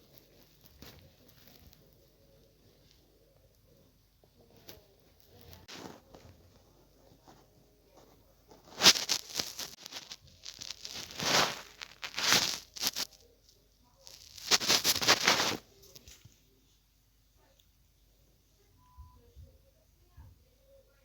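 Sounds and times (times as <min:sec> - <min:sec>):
rustling and crinkling handling noise: 0:00.0 - 0:16.9.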